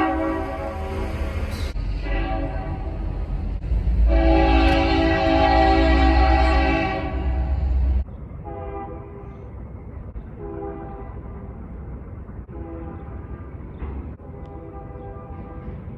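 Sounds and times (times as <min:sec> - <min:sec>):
train horn blasts: 0:00.0 - 0:09.4, 0:10.4 - 0:11.3, 0:12.5 - 0:13.3, 0:14.2 - 0:15.8.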